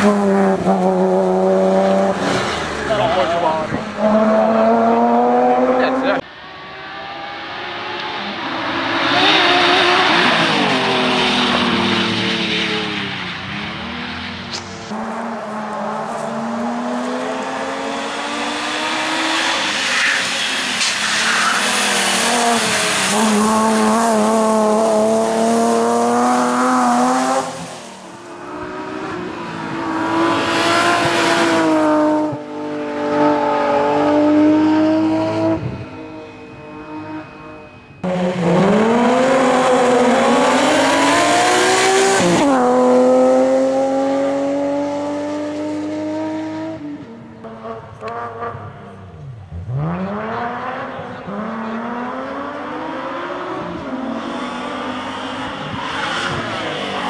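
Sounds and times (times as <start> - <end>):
rally car engine revving: 0.0 - 57.0
tyre squeal: 19.3 - 24.3.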